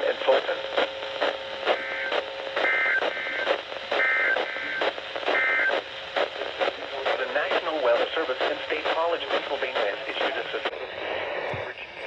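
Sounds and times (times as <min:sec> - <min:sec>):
radio static: 0:00.0 - 0:12.0
buzzy two-tone data bursts: 0:01.7 - 0:05.8.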